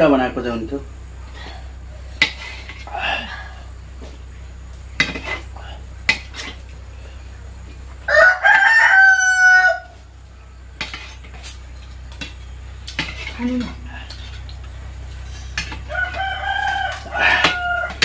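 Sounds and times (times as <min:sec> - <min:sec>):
rooster crowing: 0:08.0 - 0:10.1, 0:15.7 - 0:18.0.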